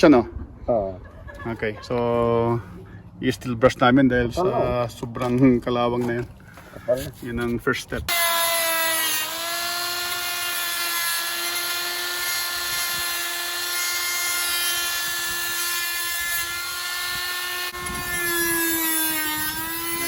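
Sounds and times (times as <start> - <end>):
wire brush power tool scrubbing: 8.1 - 20.0.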